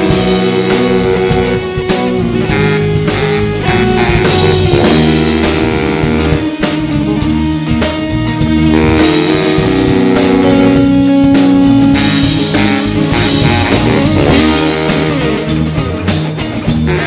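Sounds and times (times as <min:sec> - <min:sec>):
bass guitar: 0:00.0 - 0:17.0
drum kit beat: 0:00.0 - 0:17.0
electric guitar chords: 0:00.0 - 0:17.0.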